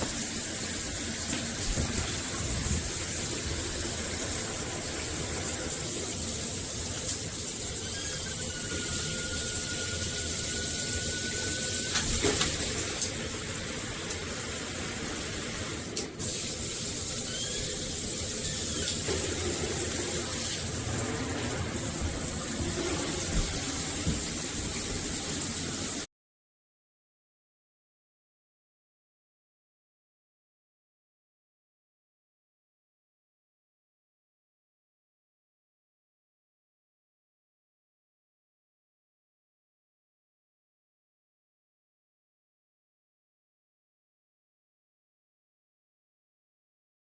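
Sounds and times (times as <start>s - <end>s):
shower head spraying water: 0.0s - 26.1s.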